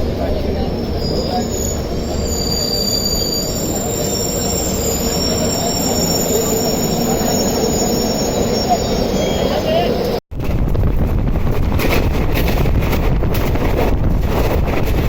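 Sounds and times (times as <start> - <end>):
train wheels rumbling on track: 0.0 - 15.0
high squealing tones: 0.7 - 10.1.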